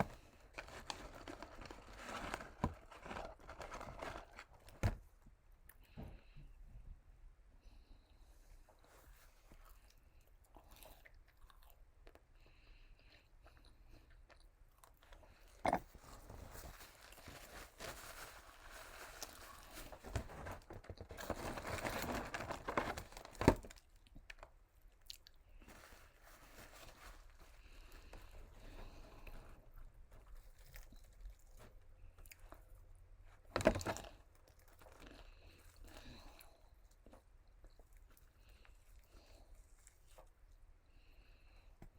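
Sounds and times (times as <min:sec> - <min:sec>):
person chewing crunchy food: 0:09.7 - 0:12.3, 0:13.0 - 0:16.2, 0:33.9 - 0:40.0.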